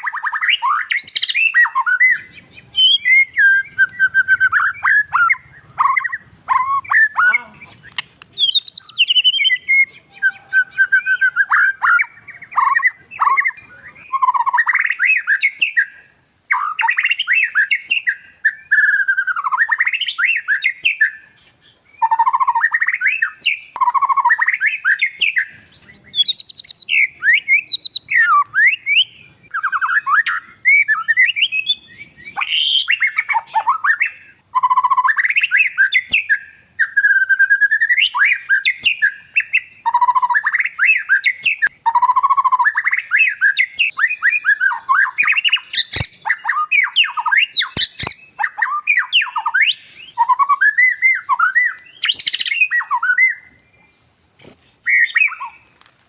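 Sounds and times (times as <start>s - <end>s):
bird singing whistled phrases: 0.0s - 21.2s, 22.0s - 53.6s, 54.4s - 55.6s
sharp clicks: 7.8s - 8.4s, 45.8s - 46.2s, 47.7s - 48.2s.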